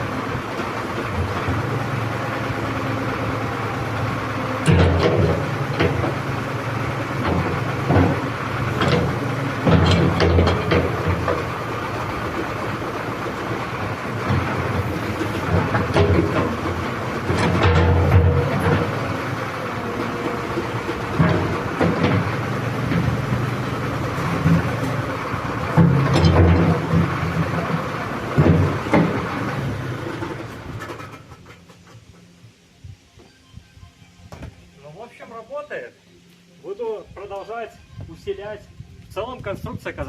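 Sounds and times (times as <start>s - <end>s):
excavator engine running: 0.0s - 35.1s
metallic clunks: 4.6s - 6.3s, 7.1s - 11.5s, 14.2s - 19.1s, 20.1s - 32.3s.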